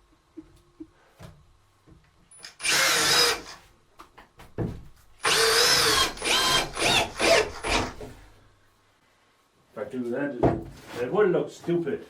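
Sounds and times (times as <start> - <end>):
power drill motor whine: 2.4 - 3.6, 5.2 - 8.0.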